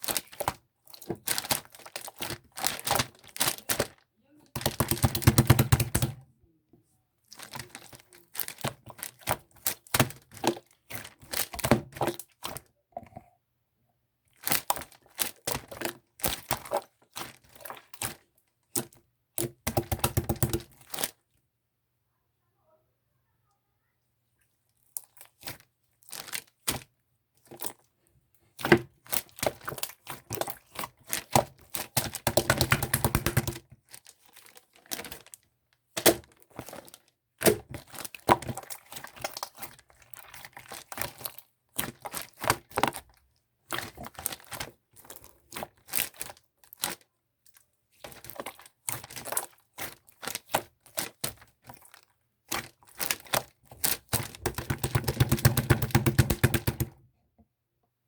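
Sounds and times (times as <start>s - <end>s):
crinkling: 0.0s - 5.2s, 7.3s - 12.7s, 24.6s - 27.9s, 28.5s - 55.6s
clicks and crackles of handling: 28.6s - 57.0s.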